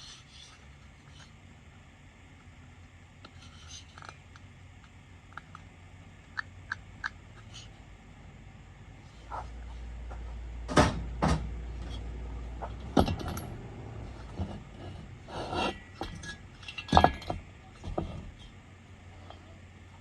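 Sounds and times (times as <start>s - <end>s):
low hum: 0.0s - 20.0s
metal tools clinking: 13.0s - 13.6s, 15.3s - 18.5s.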